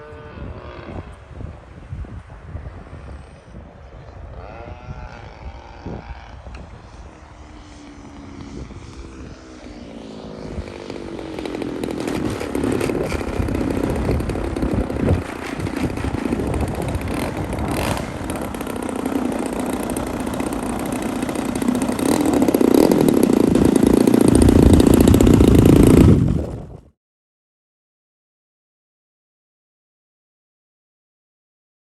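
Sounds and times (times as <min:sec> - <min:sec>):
model plane gas engine running: 0:04.2 - 0:26.8.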